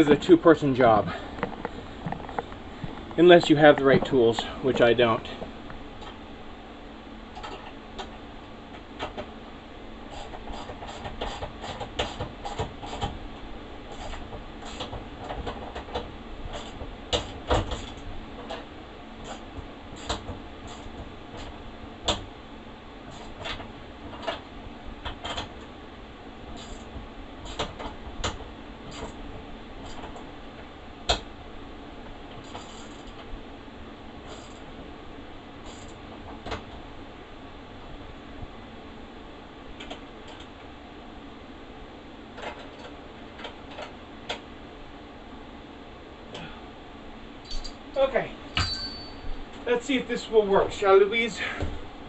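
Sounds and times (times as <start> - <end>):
steady background hiss: 0.0 - 10.2, 25.6 - 52.0.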